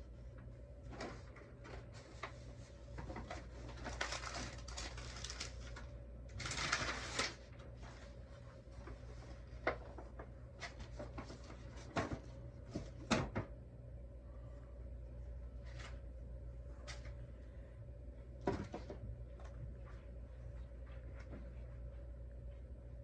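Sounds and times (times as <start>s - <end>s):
paper rustling: 0.9s - 8.2s.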